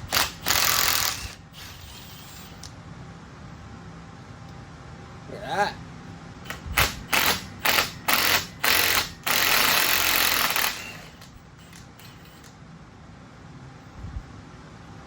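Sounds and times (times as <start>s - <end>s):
power tool cutting steel: 0.0s - 2.6s.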